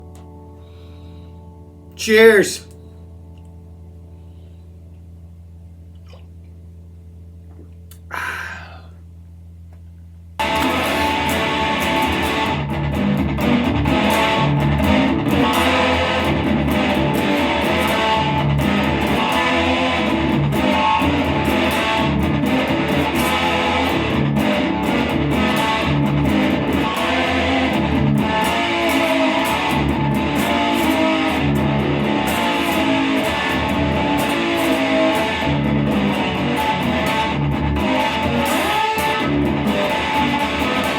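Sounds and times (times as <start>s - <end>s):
electric lap steel guitar: 0.0s - 2.0s, 10.4s - 40.9s.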